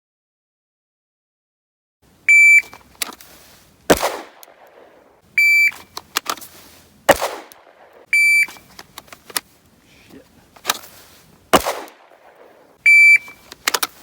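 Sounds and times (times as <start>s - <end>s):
shot timer beeping: 2.3s - 2.7s, 5.4s - 5.8s, 8.1s - 8.6s, 12.8s - 13.4s
pistol shot: 3.9s - 5.1s, 7.1s - 8.1s, 11.5s - 12.7s.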